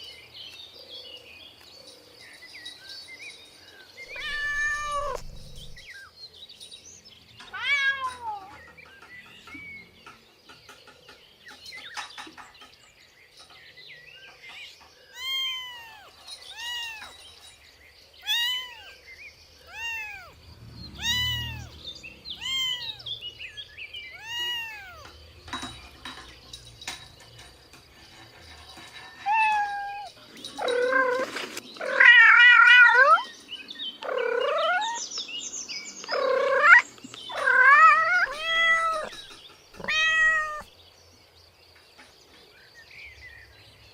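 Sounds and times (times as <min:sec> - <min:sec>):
cats meowing: 0:04.1 - 0:05.8, 0:07.4 - 0:08.7, 0:15.1 - 0:17.2, 0:18.2 - 0:19.0, 0:19.6 - 0:23.5, 0:24.1 - 0:25.2, 0:29.2 - 0:33.3, 0:34.0 - 0:35.0, 0:36.1 - 0:39.2, 0:39.8 - 0:40.7.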